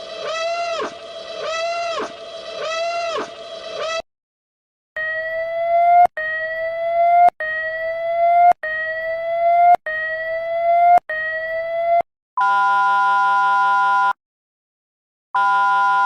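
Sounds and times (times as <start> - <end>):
steady alarm chord: 0.0 - 3.9.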